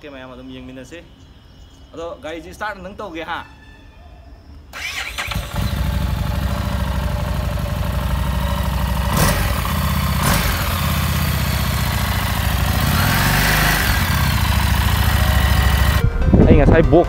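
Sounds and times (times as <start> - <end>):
motorcycle engine idling: 5.3 - 16.0.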